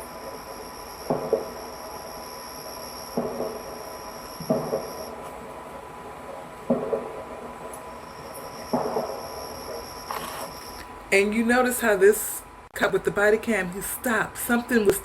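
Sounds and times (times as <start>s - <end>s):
thin steady tone: 0.0s - 5.3s, 7.8s - 12.4s
electronic hiss: 0.0s - 11.0s
muffled thumps: 4.4s - 5.0s, 6.6s - 7.3s.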